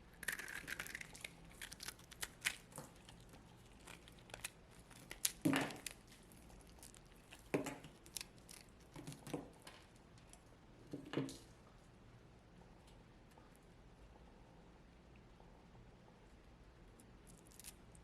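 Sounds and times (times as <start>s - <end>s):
dry block crunching and crumbling: 0.2s - 9.6s.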